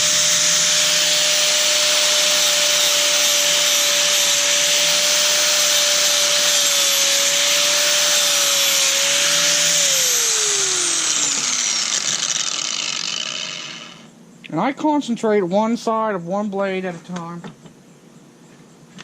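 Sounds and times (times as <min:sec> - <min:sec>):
angle grinder grinding steel: 0:00.0 - 0:14.1.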